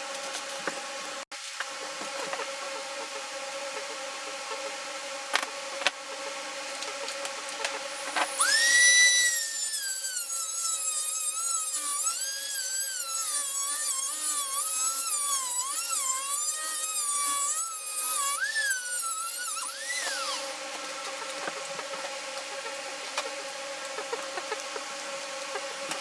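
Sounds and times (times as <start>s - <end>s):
power tool motor whining: 7.8s - 21.6s.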